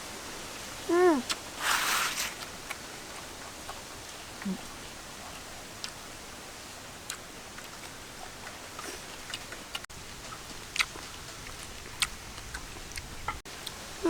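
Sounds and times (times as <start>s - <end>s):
steady hiss: 0.0s - 3.5s.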